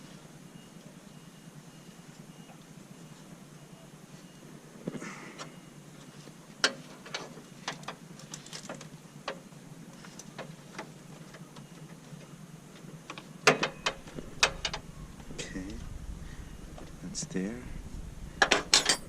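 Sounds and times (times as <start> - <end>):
hand tools clicking and knocking: 18.4 - 19.0.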